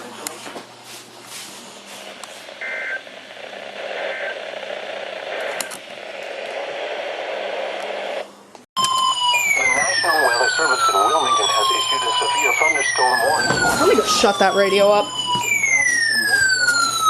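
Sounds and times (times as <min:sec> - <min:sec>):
radio static hiss: 0:01.6 - 0:08.4, 0:09.8 - 0:14.4.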